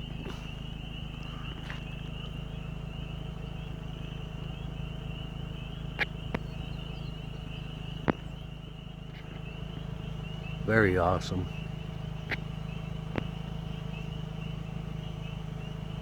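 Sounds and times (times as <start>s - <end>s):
high-pitched trilling animal chorus: 0.0s - 16.0s
low steady hum: 0.0s - 16.0s
faint clicks: 0.2s - 2.4s, 5.9s - 7.0s, 7.9s - 8.5s, 11.9s - 14.1s.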